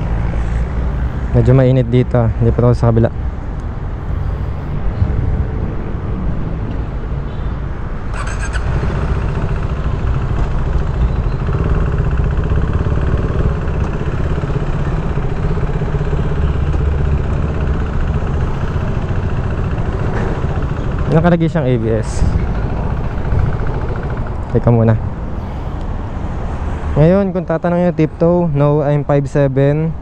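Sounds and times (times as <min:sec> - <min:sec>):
motorcycle engine running: 0:08.1 - 0:25.6.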